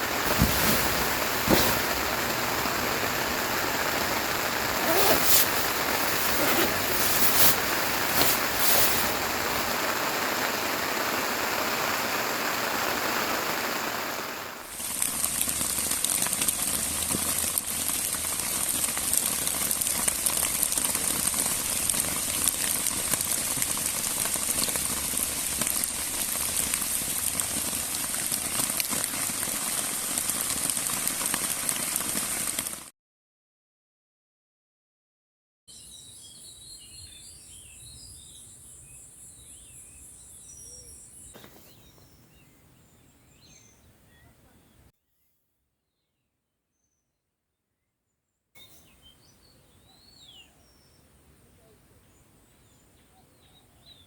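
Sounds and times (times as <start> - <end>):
heavy rain: 0.0 - 32.9.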